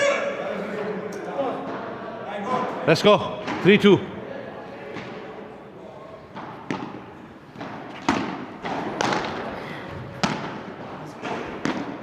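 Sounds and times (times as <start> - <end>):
ball bouncing: 6.3 - 9.4, 10.1 - 10.6, 11.2 - 12.0
padel ball hit with racket: 7.6 - 9.4, 10.2 - 10.6.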